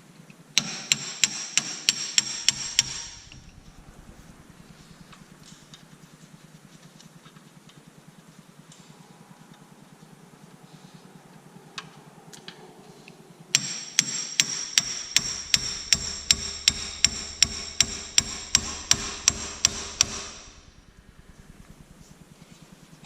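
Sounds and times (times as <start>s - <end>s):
power tool whining with clicks: 13.6s - 22.2s.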